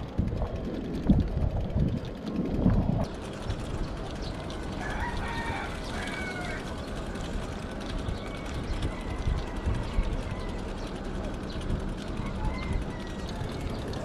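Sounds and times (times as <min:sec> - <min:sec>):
wind and riding noise rumble: 0:00.0 - 0:14.0
rooster crowing: 0:04.6 - 0:07.0, 0:08.2 - 0:10.9, 0:12.1 - 0:14.0.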